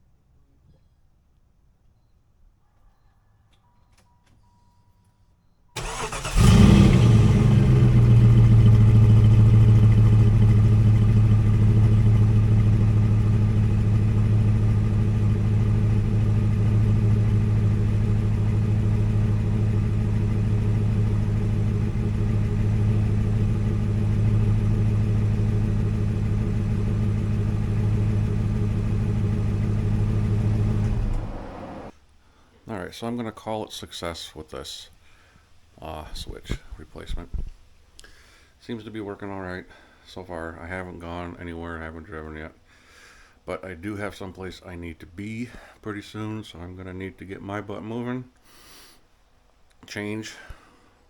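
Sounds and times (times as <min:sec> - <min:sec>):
car engine cranking and starting: 0:05.8 - 0:31.9
car engine idling: 0:05.8 - 0:31.9.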